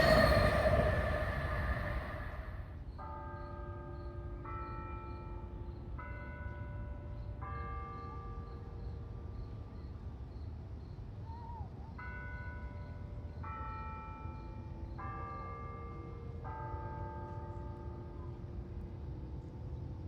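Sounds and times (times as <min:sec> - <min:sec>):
passing train rumble: 0:00.0 - 0:02.8.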